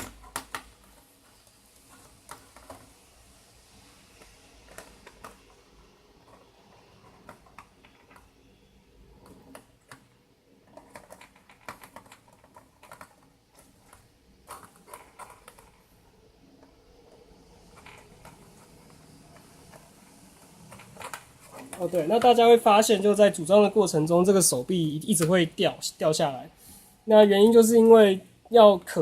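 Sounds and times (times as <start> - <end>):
plastic parts clicking and tapping: 0.0 - 3.0, 4.2 - 22.6.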